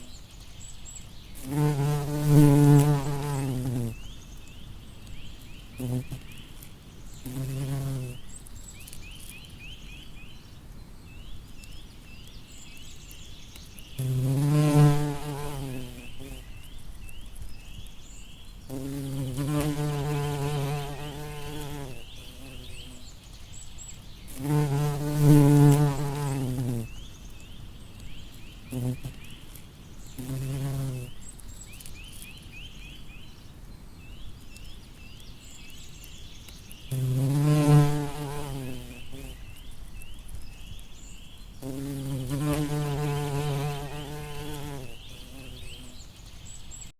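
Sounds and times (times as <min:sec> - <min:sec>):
bumblebee buzzing: 0:01.4 - 0:04.1, 0:05.8 - 0:06.3, 0:07.2 - 0:08.2, 0:14.0 - 0:16.5, 0:18.7 - 0:23.0, 0:24.3 - 0:27.0, 0:28.7 - 0:29.2, 0:30.2 - 0:31.1, 0:36.9 - 0:39.4, 0:41.6 - 0:46.0.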